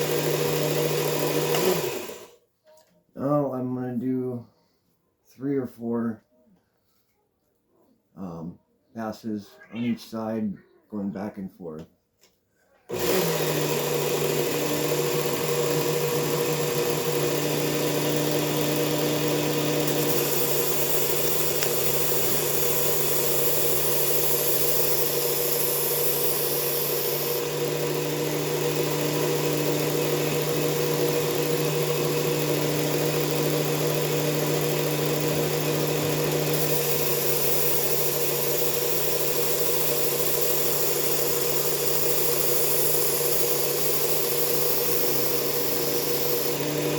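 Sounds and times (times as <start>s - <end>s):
belt sander running: 0.0s - 2.4s, 12.9s - 46.9s.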